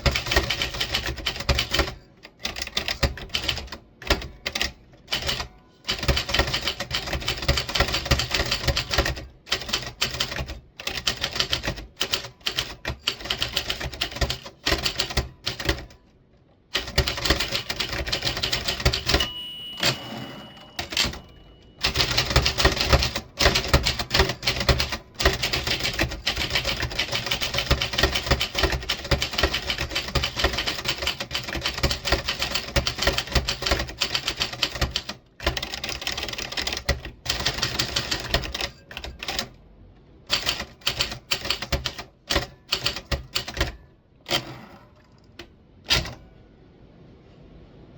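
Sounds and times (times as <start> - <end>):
typewriter keys clacking: 0.0 - 16.0, 16.8 - 20.0, 20.6 - 39.5, 40.3 - 44.5, 45.3 - 46.2
steady tone: 19.2 - 21.9.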